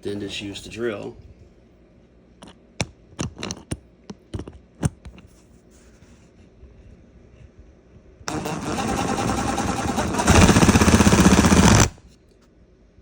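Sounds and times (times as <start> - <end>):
power drill driving a screw: 8.3 - 12.0.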